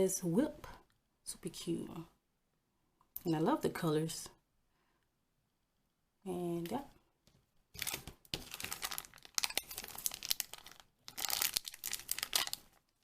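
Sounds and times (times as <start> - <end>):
plastic packaging crinkling: 7.7 - 13.0.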